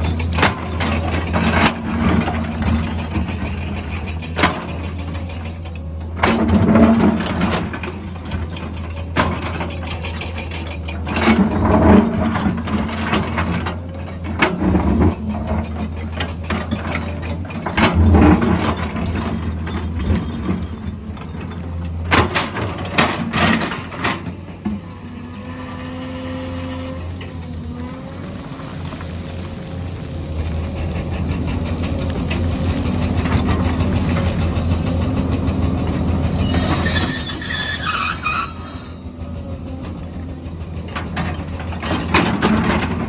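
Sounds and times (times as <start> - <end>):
diesel engine running: 0.0 - 43.0
clattering and scraping: 11.1 - 25.2, 36.2 - 39.1.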